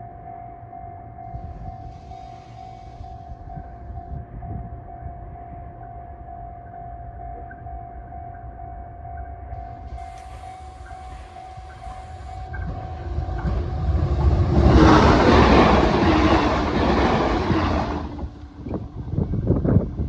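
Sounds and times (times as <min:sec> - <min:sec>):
train passing at speed: 0:01.0 - 0:06.2, 0:09.5 - 0:20.0
level crossing bell ringing: 0:09.6 - 0:14.2.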